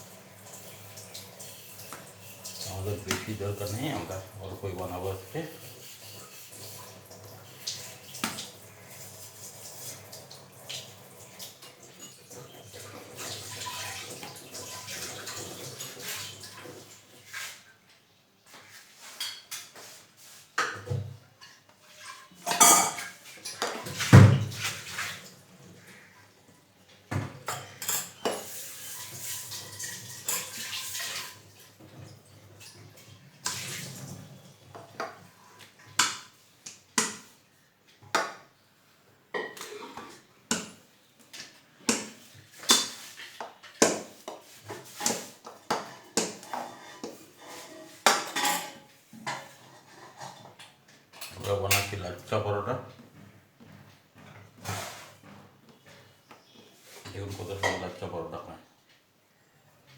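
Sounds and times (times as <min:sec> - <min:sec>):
utensils and dishes clinking: 0:11.3 - 0:16.9, 0:21.4 - 0:25.1, 0:27.4 - 0:34.3, 0:44.8 - 0:52.1.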